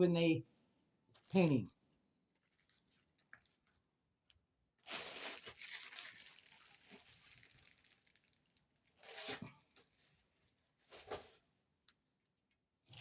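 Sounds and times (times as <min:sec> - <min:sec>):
plastic packaging crinkling: 0:04.8 - 0:10.2.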